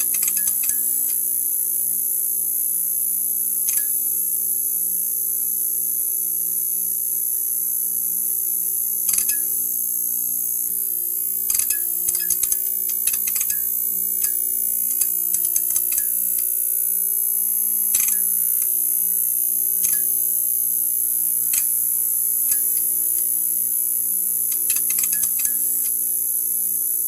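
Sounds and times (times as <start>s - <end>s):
neon sign buzzing: 8.7s - 27.0s.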